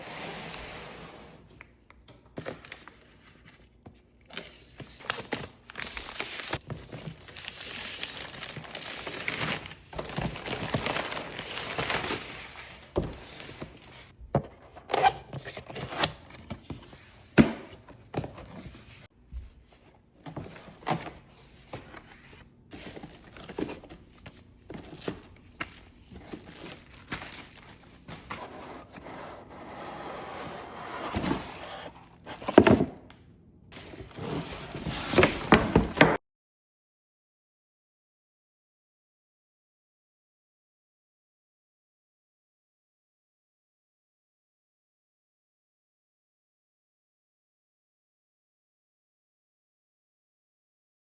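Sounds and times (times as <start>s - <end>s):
plastic and cardboard crinkling: 2.4s - 32.9s.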